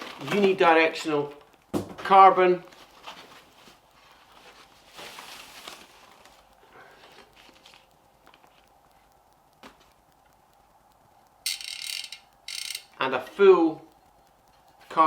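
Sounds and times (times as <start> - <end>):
soft rustling: 2.6 - 11.3
small clicks: 6.3 - 13.0.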